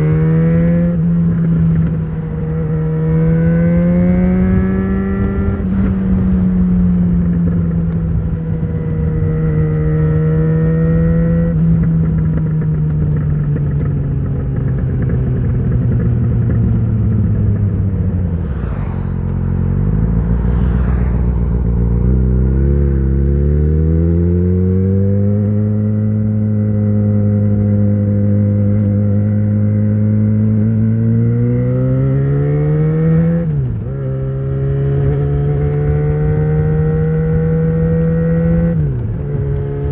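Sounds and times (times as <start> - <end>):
motorcycle engine under way: 0.0 - 18.6, 19.2 - 39.9.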